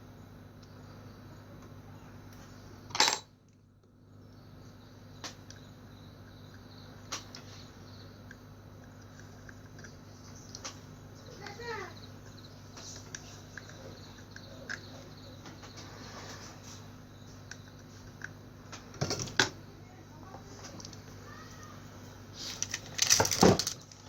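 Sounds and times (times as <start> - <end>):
steady low hum: 0.0 - 24.0
small tools clicking and clattering: 2.9 - 3.3, 22.4 - 24.0.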